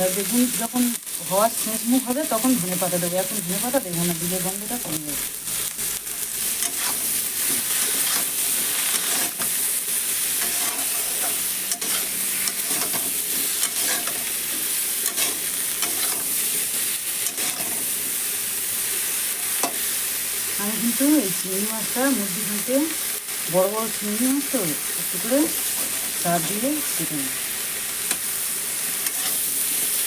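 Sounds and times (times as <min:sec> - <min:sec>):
food sizzling in oil: 0:00.0 - 0:30.0
metal spatula scraping a pan: 0:06.5 - 0:16.5, 0:17.2 - 0:17.9, 0:25.6 - 0:26.6, 0:28.9 - 0:29.5.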